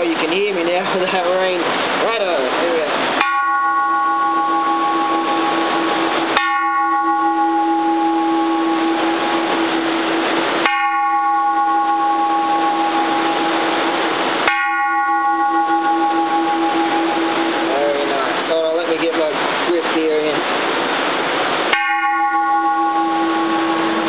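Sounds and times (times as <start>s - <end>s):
heavy rain on a tin roof: 0.0s - 3.4s, 4.2s - 22.1s
temple bell struck with wooden striker: 3.2s - 10.0s, 14.5s - 17.8s.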